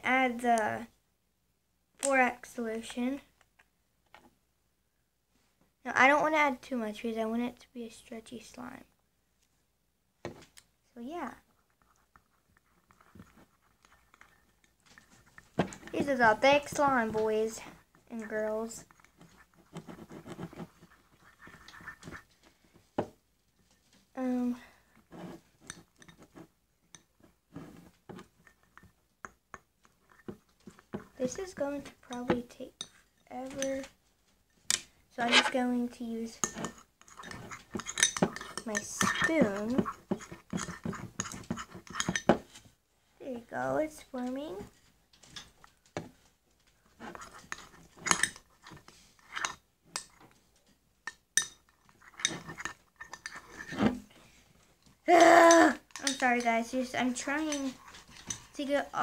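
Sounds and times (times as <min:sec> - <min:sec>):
slime stirring: 0:11.3 - 0:22.6, 0:24.9 - 0:42.6, 0:46.8 - 0:50.4, 0:51.0 - 0:59.0
spoon clinking against bowl: 0:36.4 - 0:42.3.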